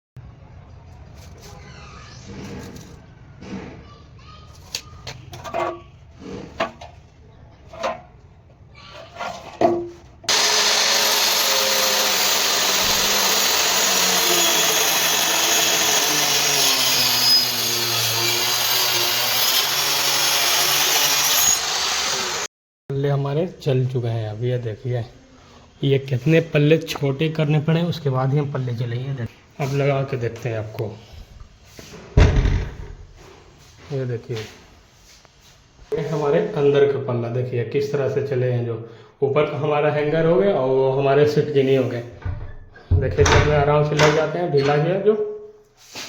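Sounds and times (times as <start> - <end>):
electric cutter cutting wood: 10.3 - 22.5
knocks: 32.2 - 33.0.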